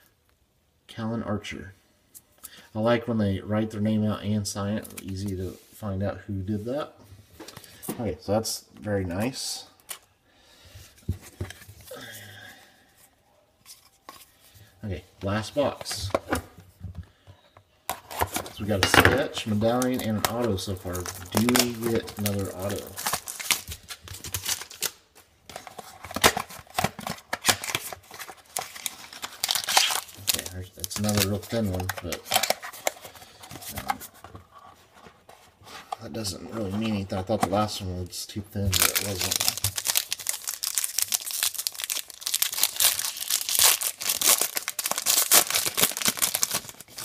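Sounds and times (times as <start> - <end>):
card pack wrapper crinkling: 19.5 - 34.1, 38.6 - 47.0.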